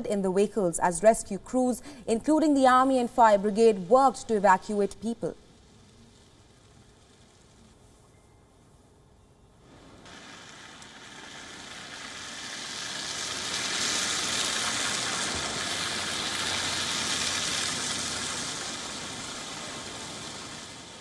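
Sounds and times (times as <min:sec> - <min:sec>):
tyre hiss of passing vehicle: 0:09.6 - 0:21.0
low engine hum: 0:09.7 - 0:21.0.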